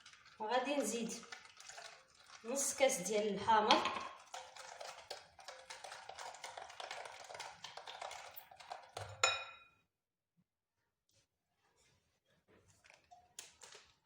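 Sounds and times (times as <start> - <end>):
glass clink: 9.2 - 9.7.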